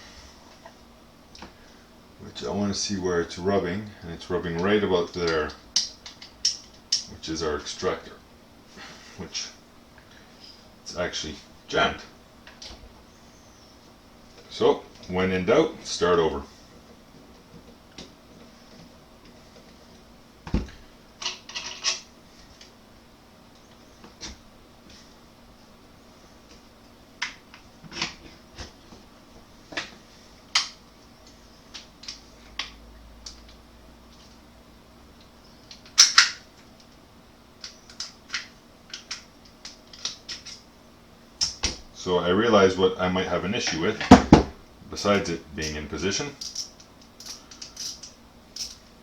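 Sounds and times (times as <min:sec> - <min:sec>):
scrapes and clicks of rifle parts: 0:46.4 - 0:48.8.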